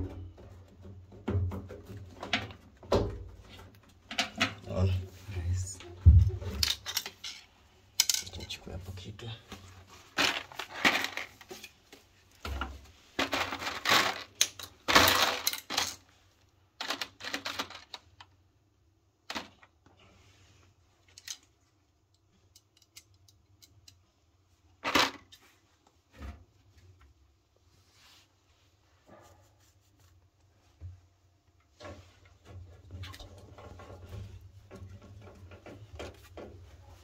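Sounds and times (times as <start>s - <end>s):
metal parts clattering: 6.6s - 8.6s, 10.2s - 11.4s, 13.2s - 16.0s.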